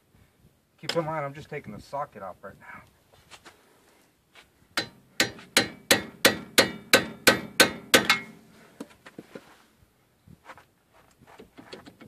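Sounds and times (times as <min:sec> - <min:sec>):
hammer striking metal: 0:04.8 - 0:08.4.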